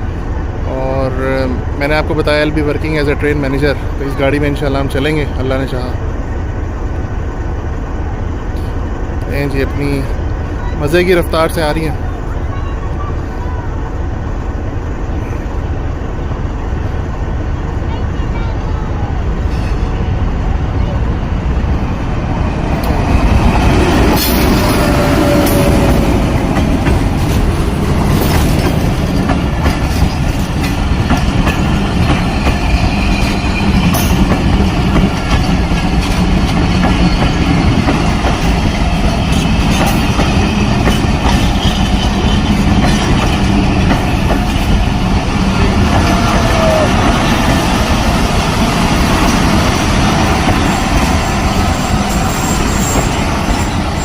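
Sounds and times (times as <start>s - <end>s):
train passing with heavy rumble: 0.0s - 54.0s
train wheels clicking over rail joints: 22.6s - 54.0s.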